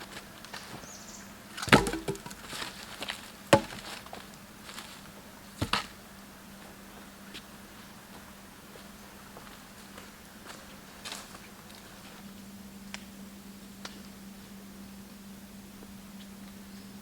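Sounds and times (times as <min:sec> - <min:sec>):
sharp knocks on wood: 0:01.7 - 0:02.4, 0:03.6 - 0:03.8.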